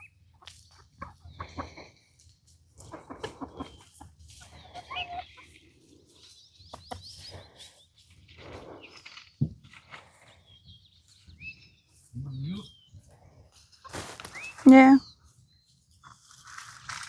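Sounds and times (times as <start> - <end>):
small birds chirping: 0.0 - 17.0
hens clucking: 0.2 - 10.3, 13.5 - 14.9.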